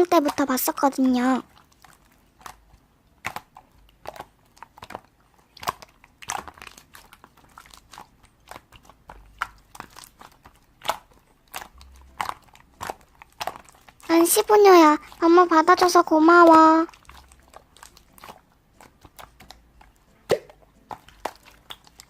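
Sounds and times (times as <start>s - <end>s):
crunchy clicks and taps: 0.0s - 14.1s.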